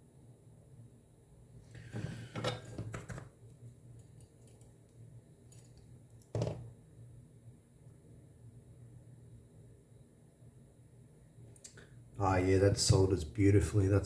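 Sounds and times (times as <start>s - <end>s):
faint low hum: 0.0s - 14.0s
tools and wire clicking and rattling: 4.0s - 4.8s, 5.5s - 6.3s.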